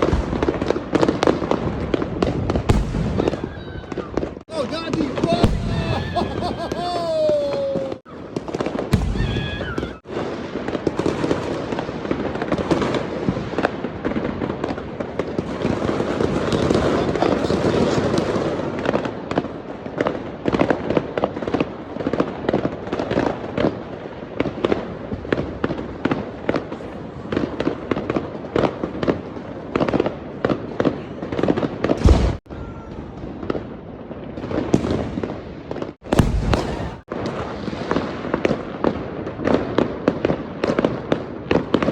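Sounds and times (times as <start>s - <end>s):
fireworks booms: 0.0s - 41.9s
fireworks crackling: 0.0s - 41.9s
falling firework whistles: 8.9s - 10.2s.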